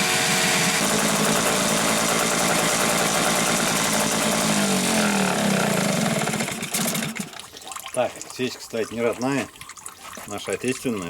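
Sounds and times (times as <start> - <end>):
outboard motor running: 0.0 - 7.4.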